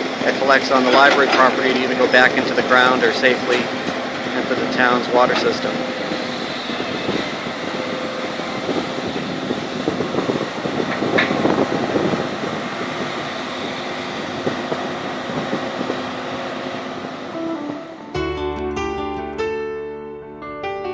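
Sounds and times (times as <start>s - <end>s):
heavy machinery running: 0.0s - 18.4s
high squeal: 17.2s - 18.2s.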